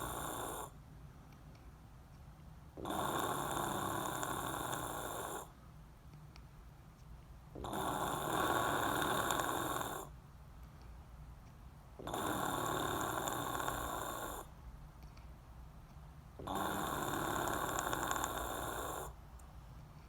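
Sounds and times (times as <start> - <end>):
person snoring heavily: 0.0 - 0.7, 2.8 - 5.5, 7.6 - 10.1, 12.0 - 14.5, 16.4 - 19.2
quiet breathing: 0.0 - 1.8, 2.7 - 5.7, 7.5 - 11.2, 11.9 - 20.0.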